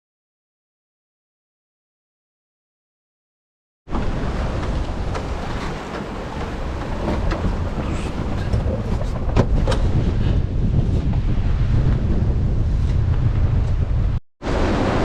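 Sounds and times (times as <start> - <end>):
water rushing along a hull: 3.9 - 13.7, 14.4 - 15.0
strong wind buffeting microphone: 3.9 - 15.0.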